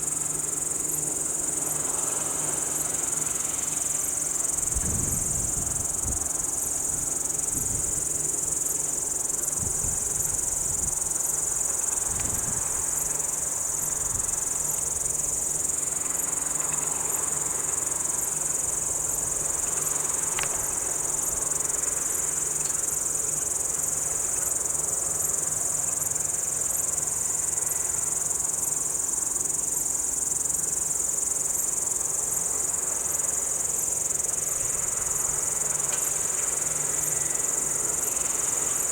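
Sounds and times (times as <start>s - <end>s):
crickets chirping: 0.0s - 38.9s
faint regular ticks: 14.6s - 28.1s, 33.2s - 38.9s.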